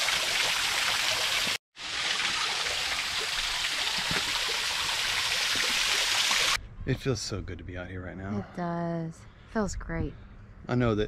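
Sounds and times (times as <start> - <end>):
waterfall and creek rushing: 0.0 - 6.6.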